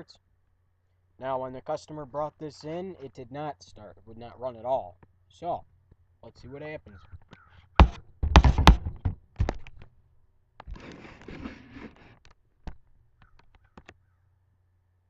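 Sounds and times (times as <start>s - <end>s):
knocks and clunks on mower: 7.0s - 9.9s
rasping noise: 10.6s - 12.3s.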